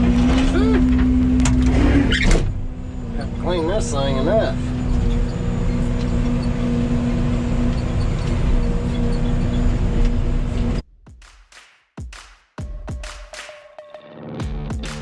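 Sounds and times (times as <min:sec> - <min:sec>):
excavator diesel engine and hydraulics: 0:00.0 - 0:10.8.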